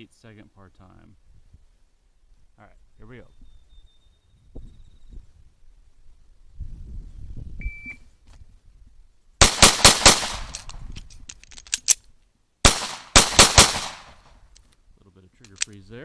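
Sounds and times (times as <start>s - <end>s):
pistol shots: 9.4s - 10.8s, 12.6s - 14.2s
metallic clacks of gun reloading: 10.4s - 12.0s, 15.4s - 15.8s.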